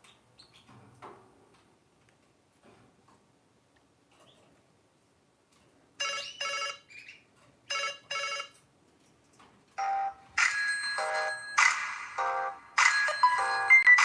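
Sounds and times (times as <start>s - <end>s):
mobile phone ringtone: 6.0s - 6.9s, 7.7s - 8.6s, 9.8s - 14.0s.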